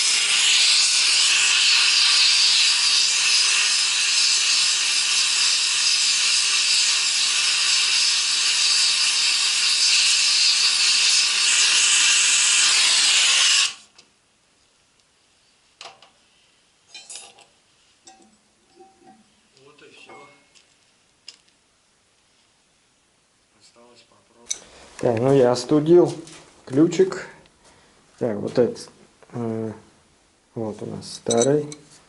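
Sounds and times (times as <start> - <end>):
welding torch flame hissing: 0.0 - 14.0.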